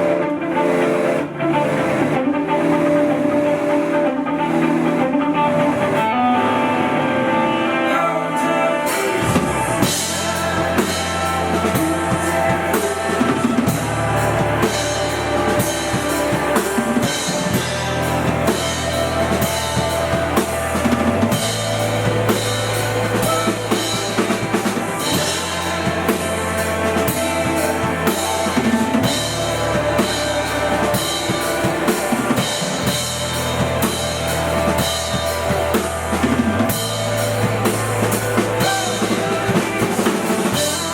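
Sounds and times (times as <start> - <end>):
bass notes: 0.0 - 40.9
guitar chords: 0.0 - 40.9
drum kit kick and snare: 8.9 - 40.9.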